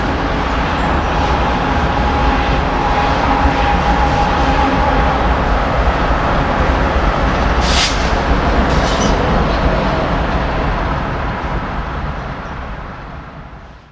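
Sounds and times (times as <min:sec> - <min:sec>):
train rumbling past: 0:00.0 - 0:13.9
high-pitched train screeches: 0:00.4 - 0:10.3.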